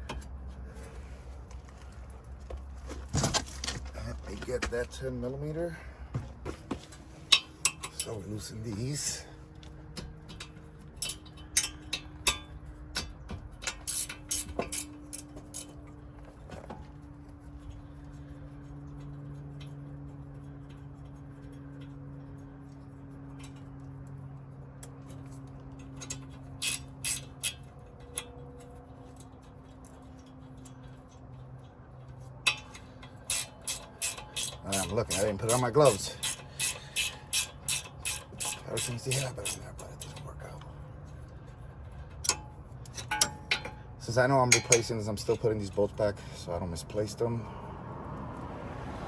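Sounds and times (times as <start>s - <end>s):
low steady hum: 0.0s - 48.5s
hand ratchet clicking: 10.3s - 15.7s, 26.0s - 28.4s, 32.4s - 40.3s, 41.9s - 45.0s.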